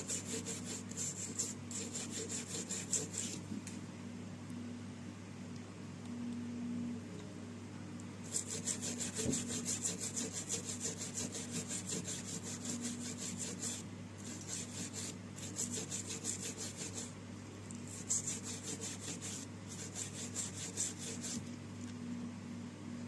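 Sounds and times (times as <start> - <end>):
rapid scrubbing of cable: 0.0 - 3.5, 8.2 - 17.2, 17.8 - 21.6.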